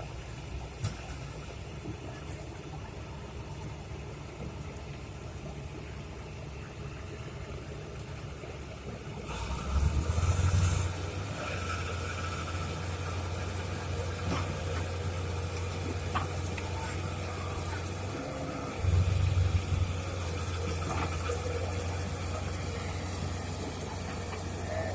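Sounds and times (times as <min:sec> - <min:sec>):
diesel engine idling: 0:00.0 - 0:24.9.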